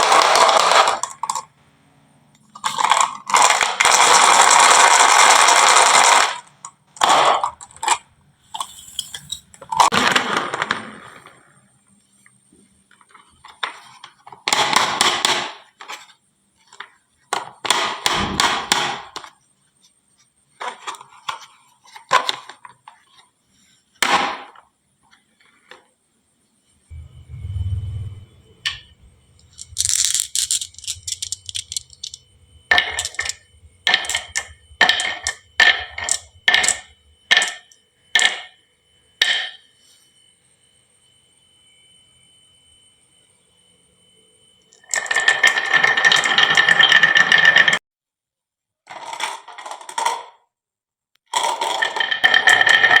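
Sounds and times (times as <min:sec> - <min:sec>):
low rolling rumble: 0:26.9 - 0:29.8
glass marbles clacking on wooden track: 0:29.4 - 0:38.5, 0:39.2 - 0:39.6, 0:44.8 - 0:47.8, 0:51.4 - 0:53.0.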